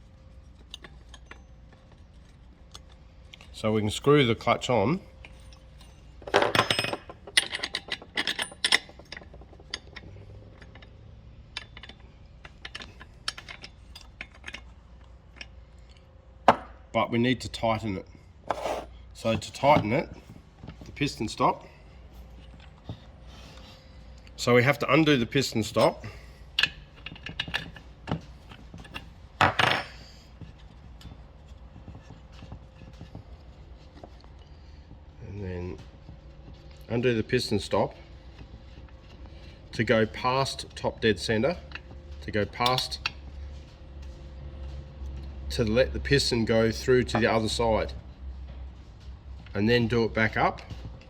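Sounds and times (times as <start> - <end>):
metal tools clinking: 5.2 - 15.5, 24.5 - 31.2, 42.5 - 43.1.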